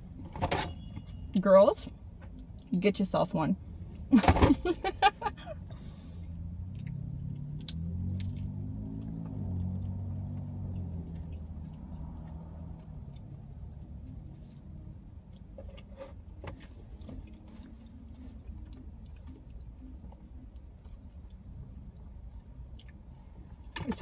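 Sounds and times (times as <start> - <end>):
chewing with wet mouth clicks: 6.6 - 15.6, 16.9 - 23.8.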